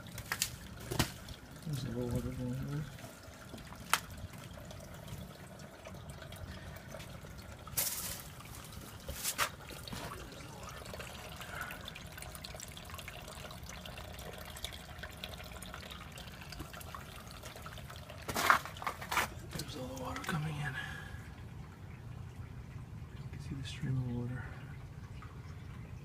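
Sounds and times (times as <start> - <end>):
stream of water trickling: 0.0 - 26.0.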